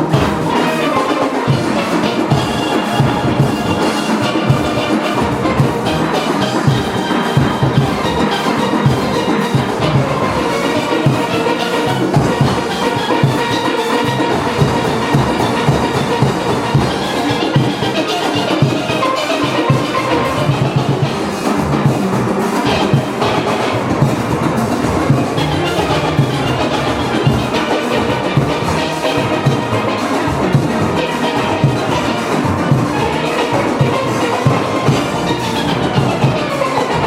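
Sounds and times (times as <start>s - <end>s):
steady drum beat: 0.0s - 37.0s
steel pans playing: 0.0s - 37.0s.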